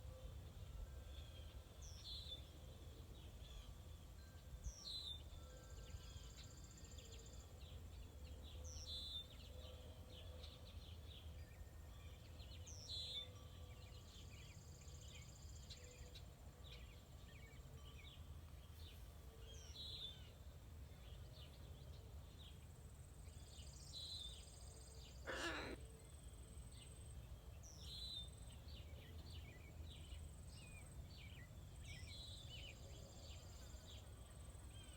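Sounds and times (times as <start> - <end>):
bird repeating high call: 25.2 - 25.8.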